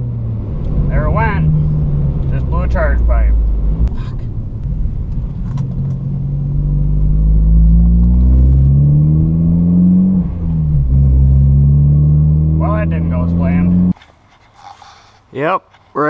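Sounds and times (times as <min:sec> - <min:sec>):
car engine running: 0:00.0 - 0:14.0
heavy low rumble: 0:00.0 - 0:14.0.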